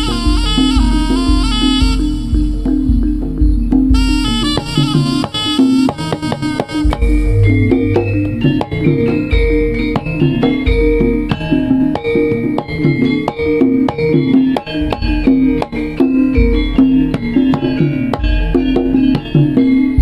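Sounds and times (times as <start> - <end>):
deep pulsing bass: 0.0 - 4.4, 6.8 - 11.2
hand-drum strokes: 0.0 - 20.0
ringing pitched percussion: 0.0 - 20.0.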